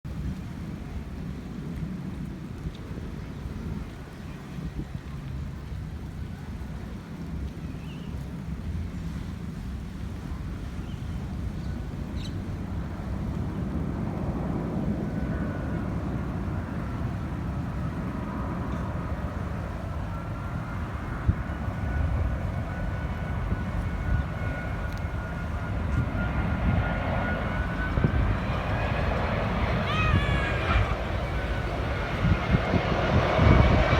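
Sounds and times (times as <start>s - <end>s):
jet engines rumbling: 8.2s - 33.9s.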